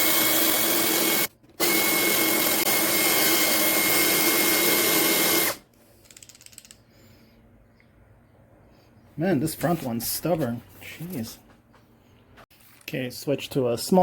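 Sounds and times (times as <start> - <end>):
cordless drill whining: 0.0 - 5.6.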